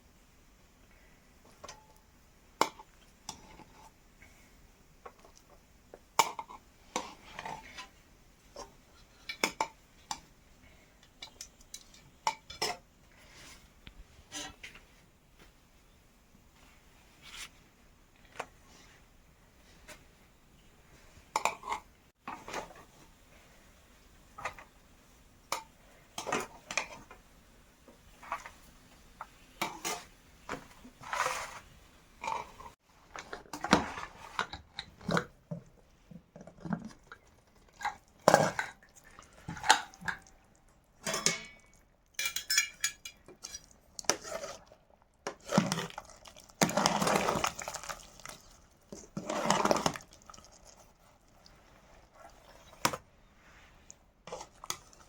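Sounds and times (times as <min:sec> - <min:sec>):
utensil scraping: 0:30.8 - 0:31.8
metal utensils clinking: 0:41.0 - 0:44.5.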